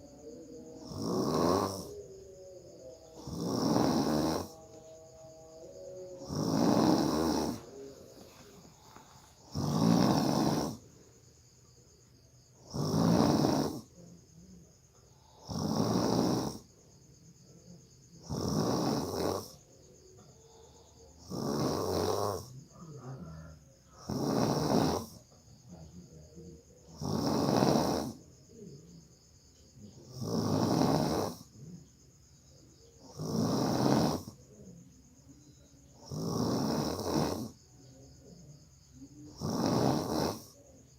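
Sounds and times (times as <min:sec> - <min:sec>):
person snoring loudly: 0:00.6 - 0:02.1, 0:02.8 - 0:04.7, 0:05.7 - 0:07.9, 0:09.2 - 0:10.9, 0:12.6 - 0:13.9, 0:15.2 - 0:16.7, 0:18.2 - 0:19.6, 0:21.2 - 0:22.5, 0:24.0 - 0:25.2, 0:26.9 - 0:28.2, 0:30.0 - 0:31.5, 0:33.0 - 0:34.4, 0:36.0 - 0:37.6, 0:39.3 - 0:40.6.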